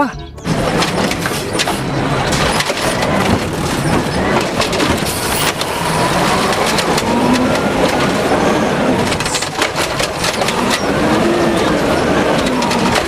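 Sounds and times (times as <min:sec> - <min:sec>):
toy truck rattling: 0:00.4 - 0:13.0.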